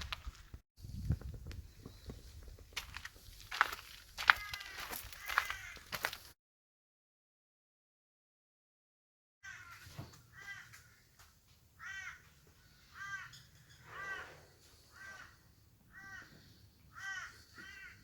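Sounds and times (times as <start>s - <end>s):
bird harsh caw-like calls: 4.2s - 6.2s, 9.4s - 11.2s, 11.8s - 18.0s.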